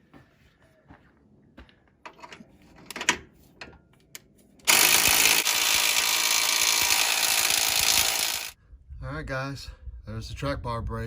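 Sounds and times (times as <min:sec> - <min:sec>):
handheld power tool running: 0:04.7 - 0:08.6.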